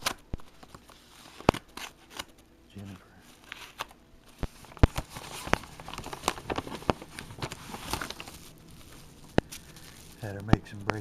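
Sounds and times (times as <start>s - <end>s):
packaging rustling crackle: 0.0s - 11.0s
packaging clicks and knocks: 3.7s - 11.0s.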